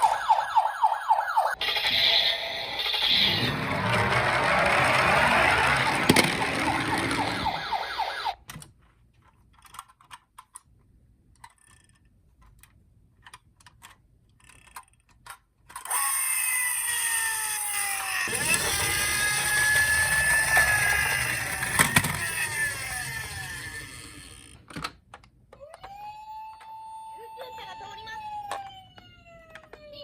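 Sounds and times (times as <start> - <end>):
toy siren: 0.0 - 8.4, 15.9 - 24.5, 25.6 - 30.0.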